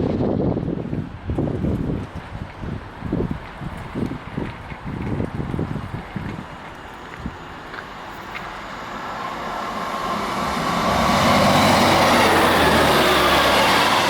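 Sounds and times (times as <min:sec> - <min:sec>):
vehicle engine approaching: 0:06.9 - 0:14.0.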